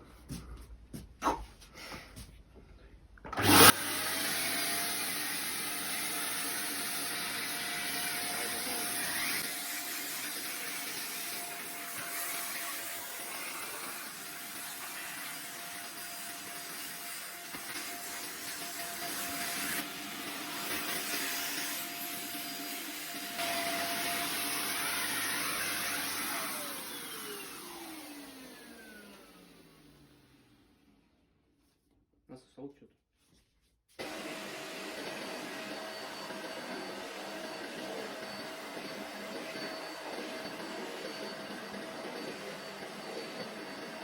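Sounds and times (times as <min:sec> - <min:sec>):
vacuum cleaner running: 0:03.3 - 0:30.8, 0:34.0 - 0:44.0
motor spinning down: 0:03.4 - 0:09.5.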